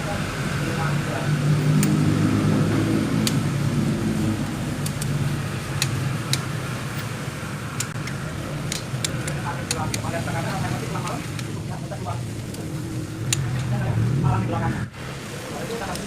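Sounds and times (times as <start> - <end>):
vehicle engine running: 0.0 - 16.0
sharp clicks and taps: 4.4 - 6.6, 7.8 - 10.2.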